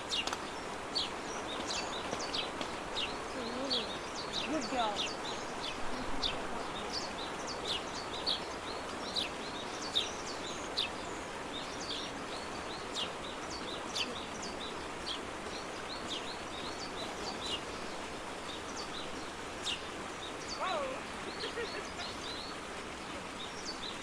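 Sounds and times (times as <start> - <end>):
small birds chirping: 0.0 - 24.0
steady outdoor hiss: 0.0 - 24.0.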